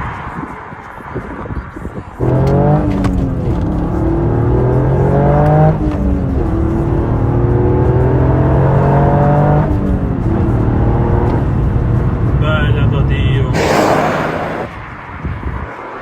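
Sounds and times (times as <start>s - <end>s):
car engine accelerating through gears: 2.2s - 12.4s, 13.5s - 14.8s.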